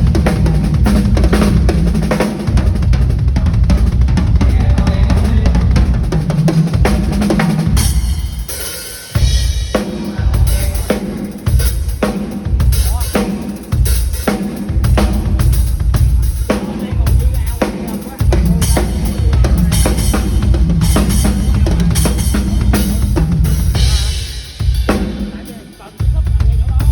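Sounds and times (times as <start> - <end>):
bass drum: 0.0 - 25.4, 26.0 - 26.9
cymbals: 0.0 - 26.9.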